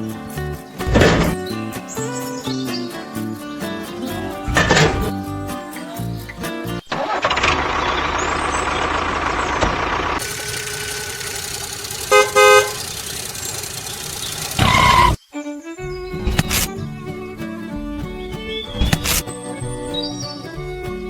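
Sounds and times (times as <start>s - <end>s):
loud burst of noise: 7.2s - 15.2s
vehicle engine noise: 7.2s - 15.2s
horn toots: 10.3s - 13.0s.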